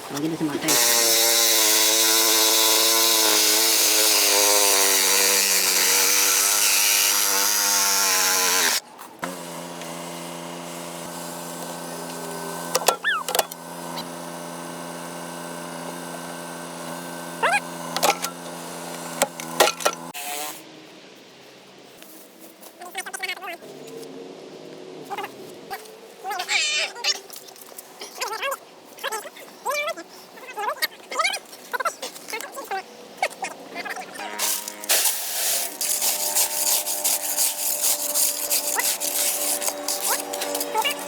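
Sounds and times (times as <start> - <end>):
power tool motor cutting: 0.2 - 20.6, 34.2 - 41.0
short squeaks: 12.8 - 13.6.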